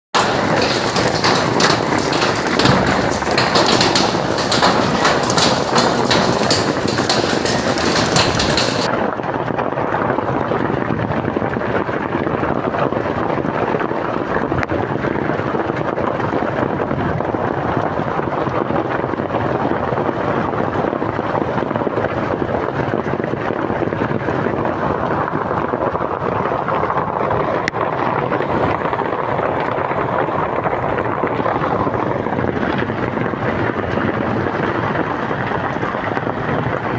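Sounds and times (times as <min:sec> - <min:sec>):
rain falling steadily: 0:00.2 - 0:08.9.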